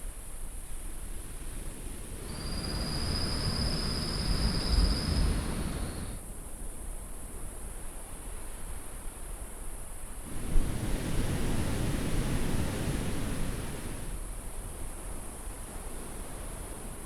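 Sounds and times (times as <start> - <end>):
wave breaking on shore: 10.3 - 14.2.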